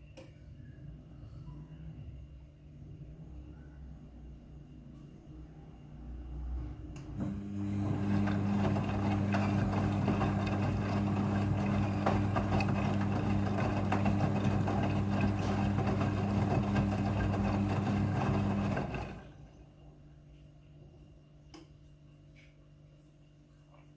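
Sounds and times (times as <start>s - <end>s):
washing machine hum: 5.4s - 21.2s.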